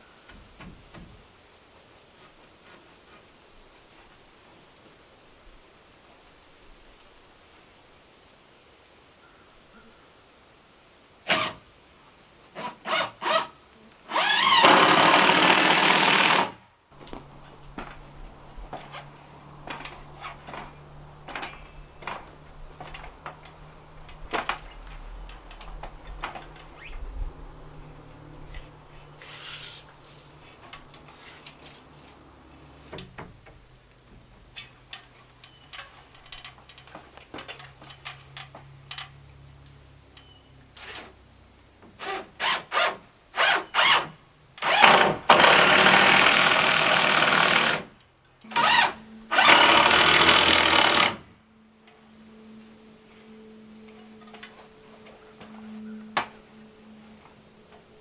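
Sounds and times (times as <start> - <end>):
power tool bursts: 11.3 - 11.6, 12.6 - 13.5, 14.1 - 16.6, 42.0 - 47.9, 48.5 - 51.3.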